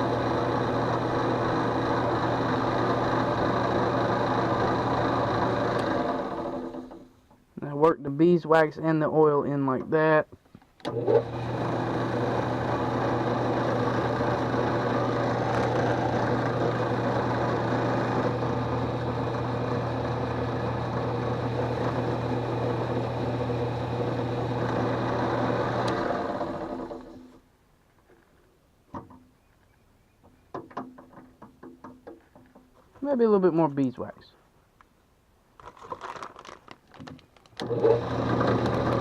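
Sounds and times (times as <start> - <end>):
drill press motor humming: 0.0 - 7.2, 10.8 - 27.4, 37.6 - 39.0.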